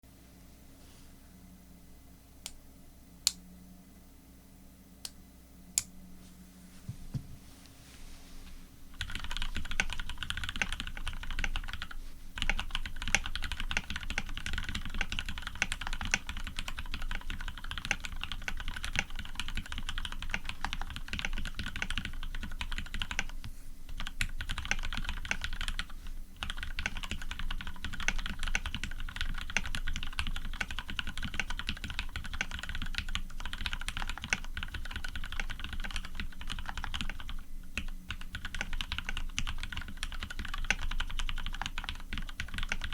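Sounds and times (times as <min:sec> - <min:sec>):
mechanical keyboard typing: 0:09.0 - 0:42.9.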